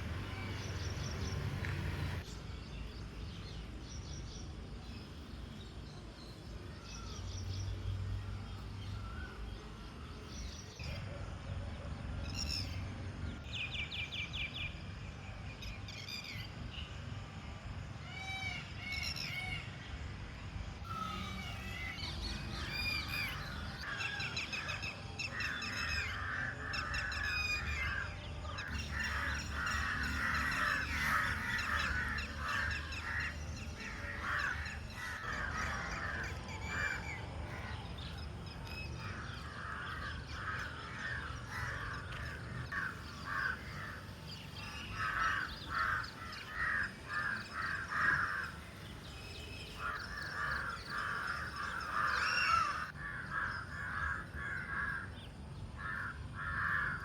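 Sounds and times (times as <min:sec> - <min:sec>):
birds calling in rapid notes: 0:20.8 - 0:57.0.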